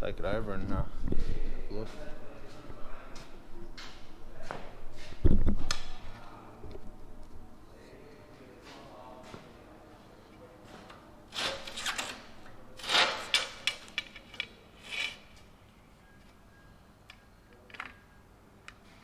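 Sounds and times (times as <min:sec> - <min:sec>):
sheet metal scraping: 0:11.3 - 0:15.8.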